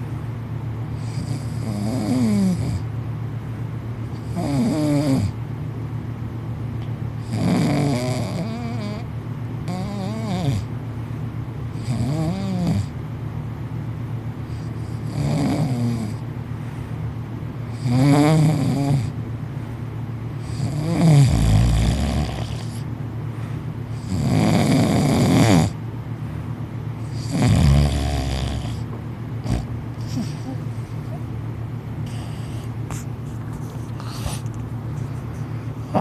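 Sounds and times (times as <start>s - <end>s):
man snoring loudly: 1.0s - 2.8s, 4.2s - 5.4s, 7.2s - 9.0s, 9.7s - 10.7s, 11.8s - 12.9s, 15.0s - 16.2s, 17.7s - 19.1s, 20.4s - 22.8s, 24.0s - 25.8s, 27.1s - 28.8s.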